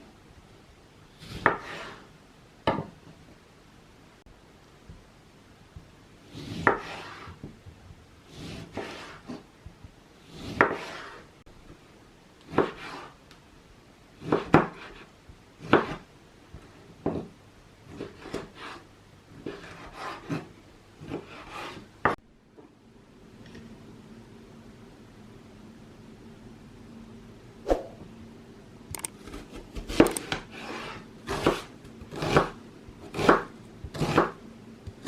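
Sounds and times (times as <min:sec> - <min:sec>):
knife cutting on wooden board: 0:01.2 - 0:02.1, 0:06.3 - 0:07.4, 0:08.3 - 0:09.4, 0:10.3 - 0:11.3, 0:12.5 - 0:13.2, 0:14.2 - 0:16.0, 0:19.4 - 0:21.9, 0:29.2 - 0:34.4.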